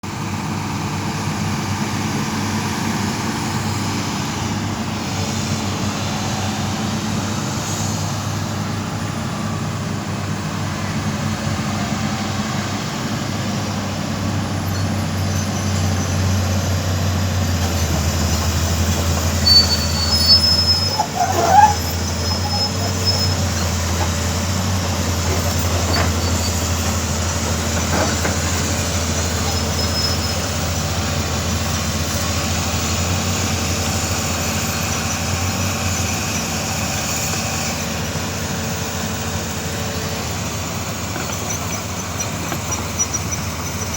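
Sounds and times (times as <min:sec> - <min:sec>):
excavator diesel engine running: 0:00.0 - 0:43.9
metallic squeals and knocks: 0:17.4 - 0:30.9, 0:40.6 - 0:43.9.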